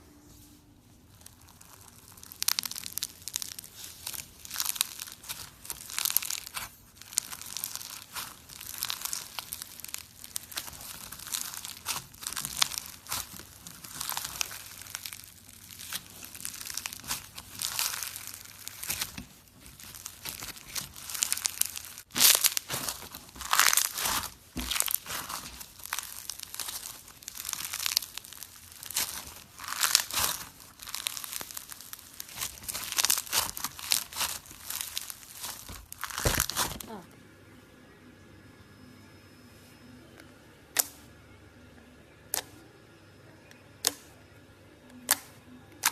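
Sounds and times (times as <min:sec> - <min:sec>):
slime squished by hand: 0:01.1 - 0:37.0.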